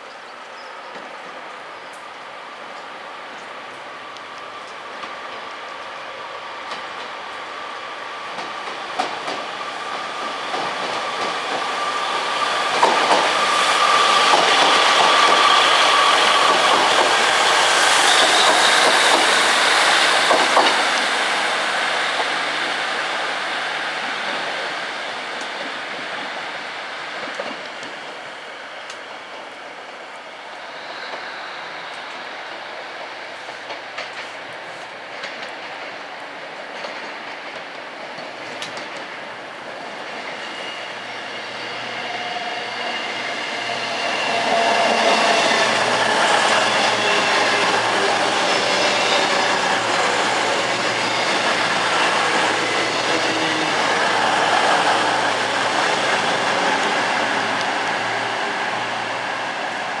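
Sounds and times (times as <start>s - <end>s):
train passing: 0.9s - 60.0s.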